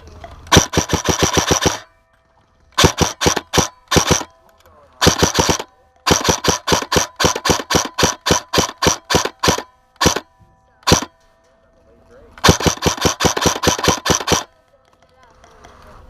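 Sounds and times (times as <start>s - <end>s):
airsoft gun firing bursts: 0.5s - 1.9s, 2.8s - 4.3s, 5.0s - 11.1s, 12.4s - 14.6s.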